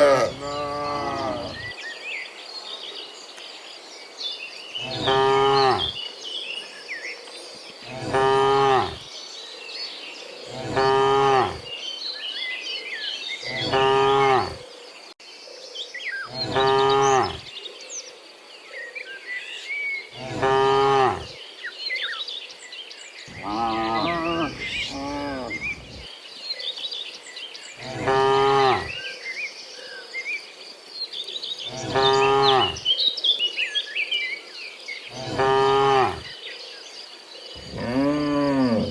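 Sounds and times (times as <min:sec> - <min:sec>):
cows mooing: 0:00.0 - 0:01.7, 0:07.9 - 0:09.0, 0:10.5 - 0:11.6, 0:13.5 - 0:14.6, 0:16.3 - 0:17.4, 0:20.2 - 0:21.3, 0:23.3 - 0:26.0, 0:27.8 - 0:28.9, 0:31.7 - 0:32.8, 0:35.2 - 0:36.2, 0:37.6 - 0:38.9.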